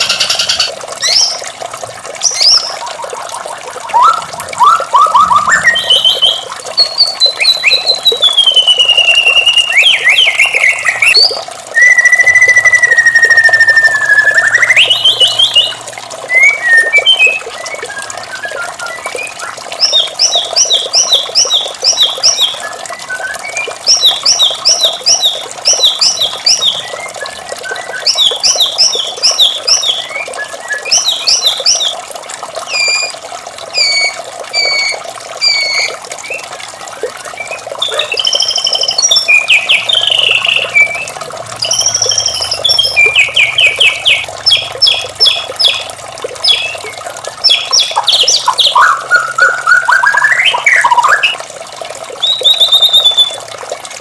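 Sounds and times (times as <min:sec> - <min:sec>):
running water: 0:00.0 - 0:54.0
bird singing whistled notes: 0:02.3 - 0:03.2, 0:03.9 - 0:20.8, 0:25.7 - 0:31.9, 0:32.7 - 0:33.1, 0:33.8 - 0:36.4, 0:37.3 - 0:45.8, 0:46.4 - 0:51.4, 0:52.2 - 0:53.4.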